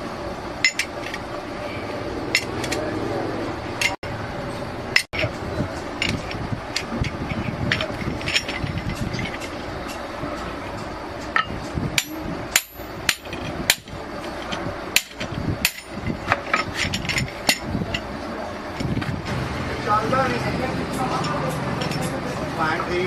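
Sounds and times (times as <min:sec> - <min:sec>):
workshop noise: 0:00.0 - 0:23.0
hammer striking metal: 0:11.2 - 0:14.0.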